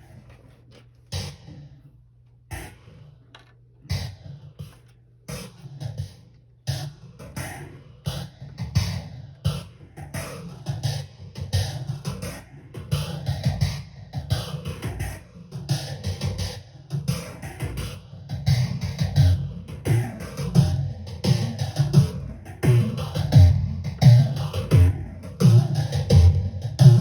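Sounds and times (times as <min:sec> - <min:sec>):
steady low hum: 0:00.0 - 0:10.1.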